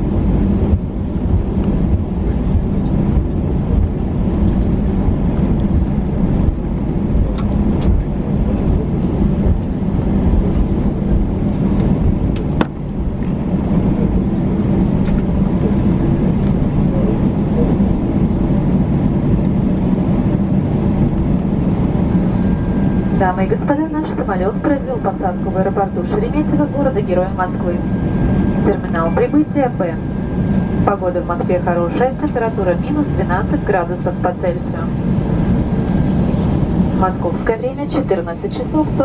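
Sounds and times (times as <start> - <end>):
aircraft engines rumbling: 0.0 - 39.0.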